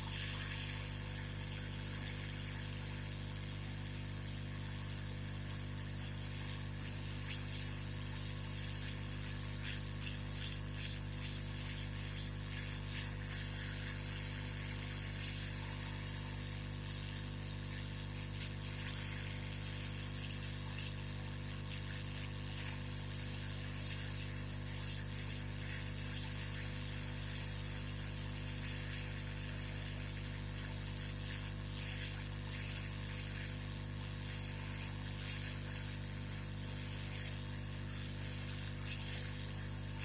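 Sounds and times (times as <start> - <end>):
hot-air blower hissing: 0.0 - 1.7
low electrical hum: 0.0 - 40.0.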